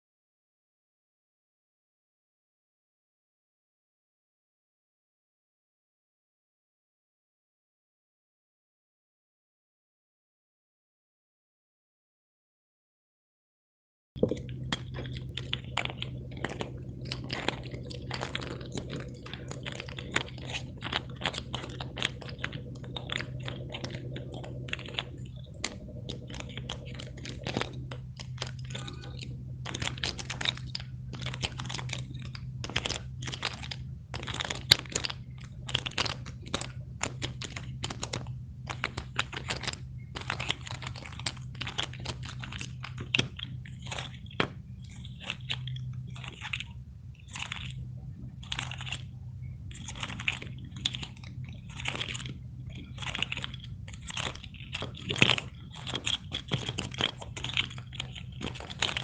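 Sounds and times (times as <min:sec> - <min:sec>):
steady low hum: 0:14.2 - 0:59.0.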